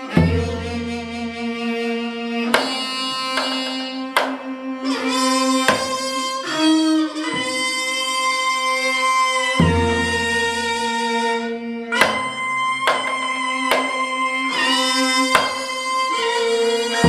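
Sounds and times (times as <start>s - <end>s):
traditional wind and string ensemble: 0.0s - 17.0s
sharp drum strokes: 2.5s - 4.5s, 5.6s - 6.2s, 12.0s - 16.0s.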